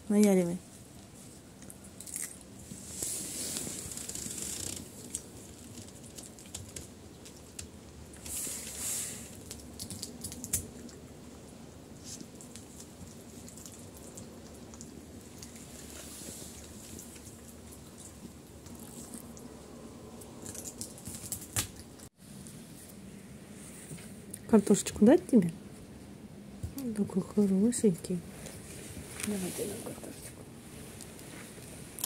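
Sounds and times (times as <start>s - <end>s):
wet chewing and smacking: 9.3s - 11.2s, 12.0s - 22.1s.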